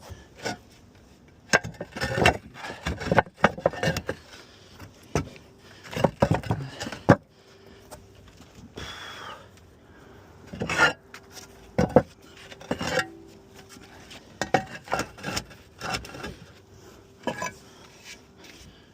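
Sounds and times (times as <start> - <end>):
roof tiles clinking and scraping: 1.4 - 7.3, 10.5 - 18.8.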